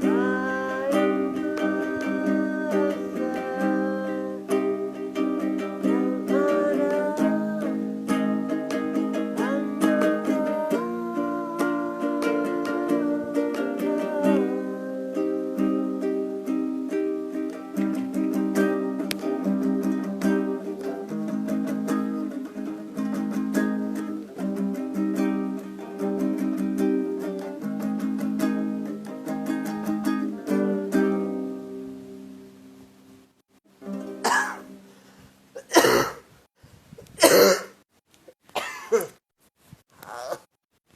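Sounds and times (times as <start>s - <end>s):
plucked string instrument: 0.0s - 35.2s
harsh coughs: 34.3s - 34.6s, 35.6s - 36.2s, 37.2s - 37.8s, 38.6s - 39.2s.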